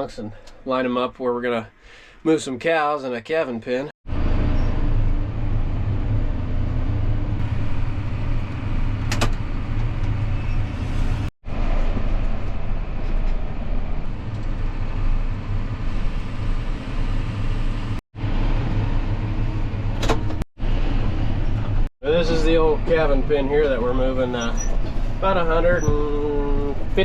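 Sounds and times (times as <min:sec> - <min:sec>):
tractor engine running: 0:04.2 - 0:21.9.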